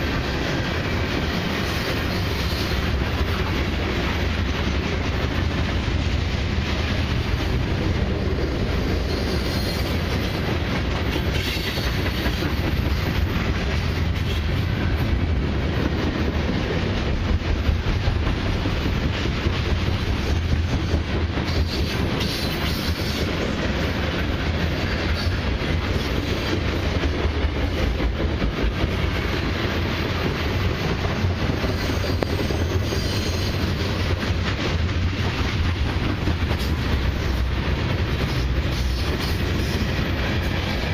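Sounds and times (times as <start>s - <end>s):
freight train rumbling past: 0.0s - 40.9s
high wheel squeals: 9.0s - 10.0s.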